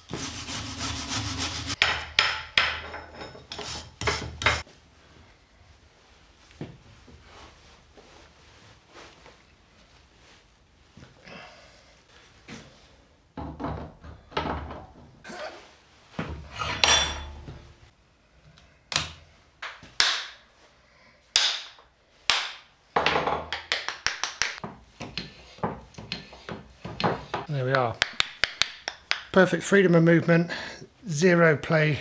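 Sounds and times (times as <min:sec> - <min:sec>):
tool striking universal joint: 0:00.2 - 0:04.6.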